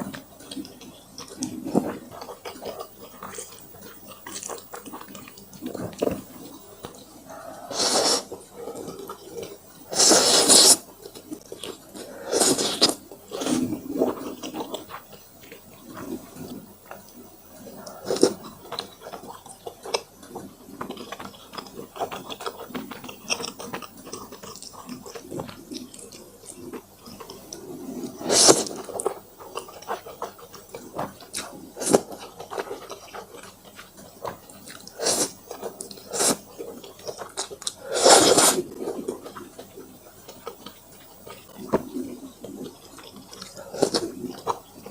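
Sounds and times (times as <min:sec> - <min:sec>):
wet chewing and smacking: 0:00.1 - 0:09.9, 0:10.6 - 0:44.9
noodle slurps: 0:07.3 - 0:08.3, 0:09.9 - 0:10.9, 0:12.0 - 0:14.6, 0:27.8 - 0:29.1, 0:34.7 - 0:39.4.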